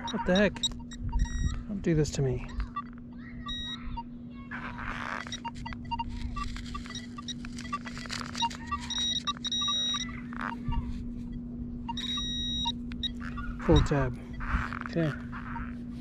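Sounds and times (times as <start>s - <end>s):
metal detector beeps: 0.0s - 4.0s, 4.8s - 15.8s
steady low hum: 0.0s - 16.0s
scraping and rustling: 4.6s - 9.4s.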